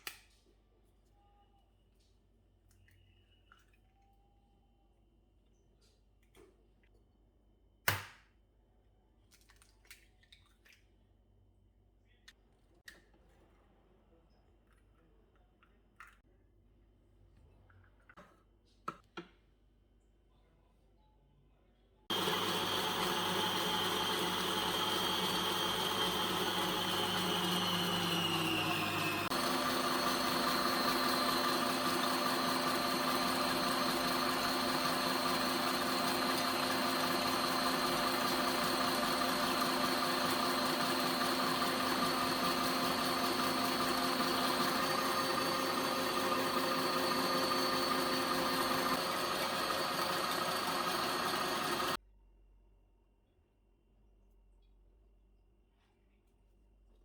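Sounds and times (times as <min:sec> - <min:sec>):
kitchen appliance motor running: 0:22.1 - 0:52.0.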